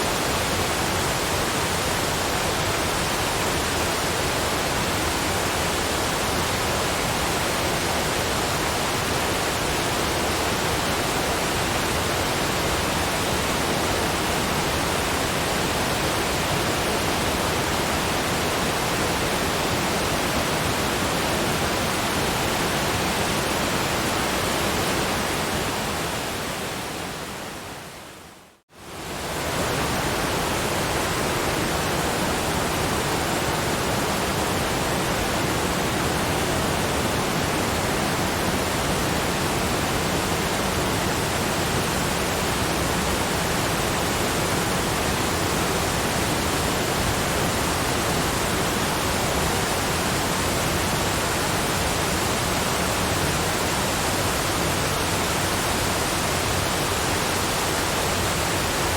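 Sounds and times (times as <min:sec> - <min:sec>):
waterfall rushing: 0:28.8 - 0:58.9.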